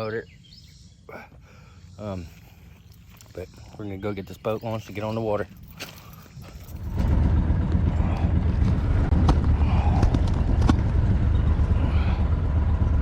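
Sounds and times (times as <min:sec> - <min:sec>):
engine running: 0:05.5 - 0:13.0.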